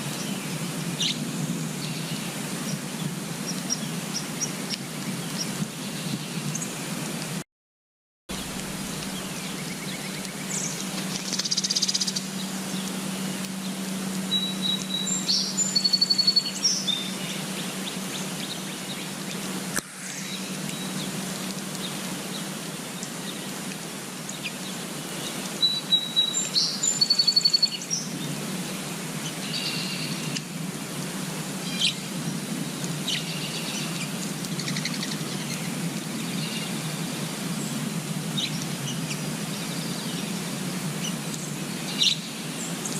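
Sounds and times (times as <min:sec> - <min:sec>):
outdoor background noise: 0:00.0 - 0:07.4, 0:08.3 - 0:42.9
songbird singing with trill: 0:08.3 - 0:19.1, 0:25.6 - 0:28.3, 0:29.2 - 0:30.4, 0:41.0 - 0:42.9
low hum: 0:08.3 - 0:21.9
bird chirps: 0:14.3 - 0:17.4, 0:25.6 - 0:27.9.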